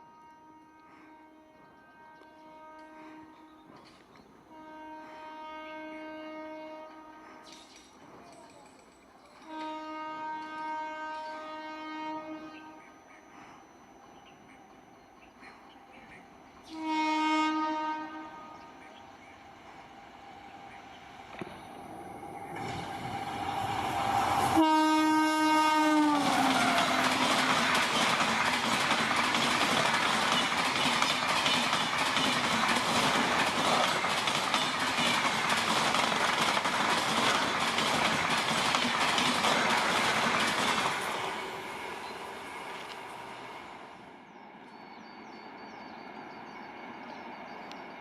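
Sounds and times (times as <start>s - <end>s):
train horn: 0.0s - 3.9s, 4.5s - 7.5s, 9.4s - 13.3s, 16.6s - 19.4s, 22.5s - 30.6s
train wheels clickety-clack: 7.4s - 11.4s, 26.0s - 41.5s.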